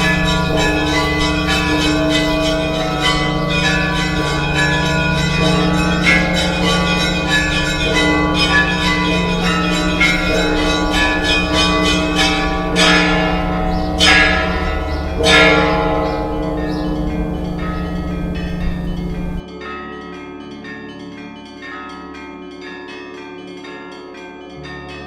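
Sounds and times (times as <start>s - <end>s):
large bell humming: 0.0s - 19.4s
loud bell strokes: 0.0s - 19.4s
small church bells ringing: 0.0s - 25.0s.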